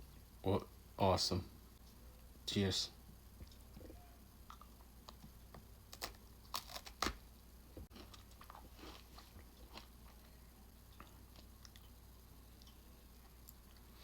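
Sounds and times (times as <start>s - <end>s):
cookie crunching: 4.5s - 7.2s, 7.9s - 14.0s
chewing: 7.9s - 14.0s.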